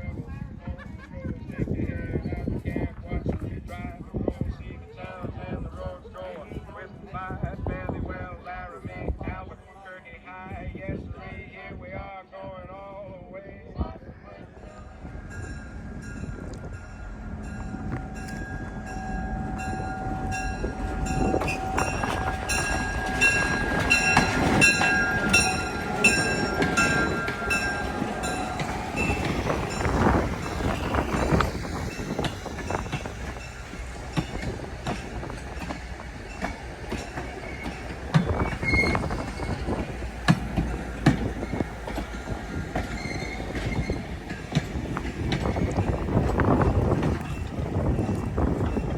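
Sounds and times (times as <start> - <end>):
train rumble: 0.0 - 48.9
train bell ringing: 14.6 - 48.9
train wheels clicking on rails: 14.6 - 48.9.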